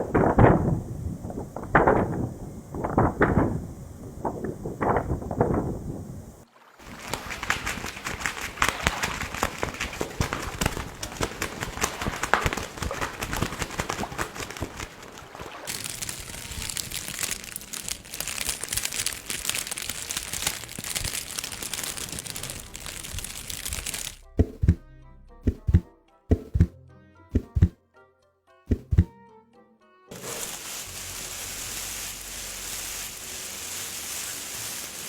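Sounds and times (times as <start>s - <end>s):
material crumpling and crackling: 0.0s - 24.3s, 30.1s - 35.0s
sharp thuds: 24.3s - 24.8s, 25.5s - 26.7s, 27.4s - 27.8s, 28.7s - 29.1s.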